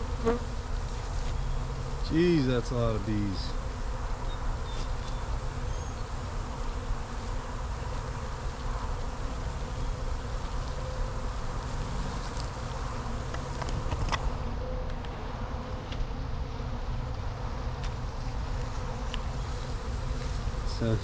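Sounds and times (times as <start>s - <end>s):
honeybees buzzing: 0.0s - 15.9s, 16.5s - 21.0s.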